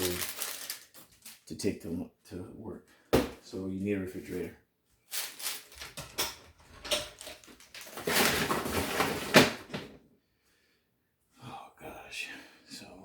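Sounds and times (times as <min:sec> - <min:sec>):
noisy handling of objects: 0:00.0 - 0:01.5, 0:05.1 - 0:09.9.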